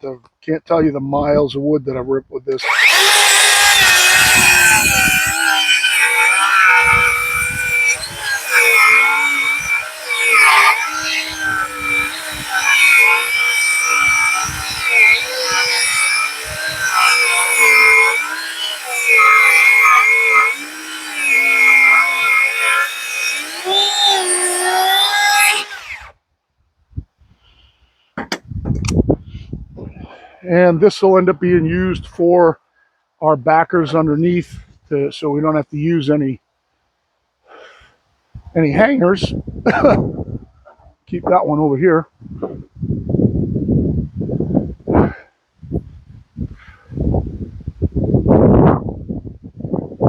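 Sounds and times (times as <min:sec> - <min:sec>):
circular saw cutting wood: 0:02.5 - 0:26.2.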